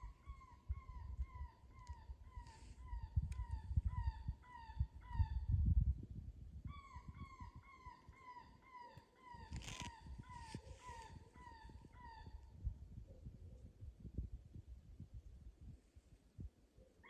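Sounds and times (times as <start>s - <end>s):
brief rustle: 9.5s - 11.1s.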